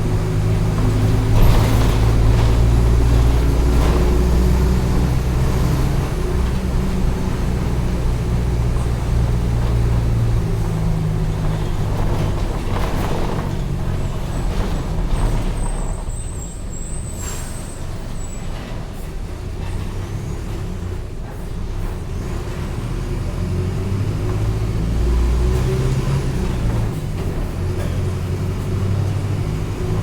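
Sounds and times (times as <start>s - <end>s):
bus engine running: 0.0s - 30.0s
air brakes hissing: 15.6s - 19.2s.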